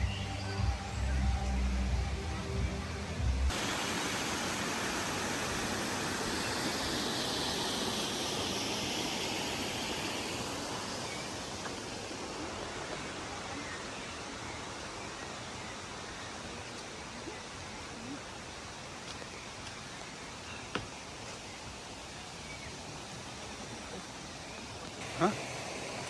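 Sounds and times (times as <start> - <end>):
background music: 0.0 - 3.5
waterfall rushing: 0.0 - 16.6, 24.9 - 26.0.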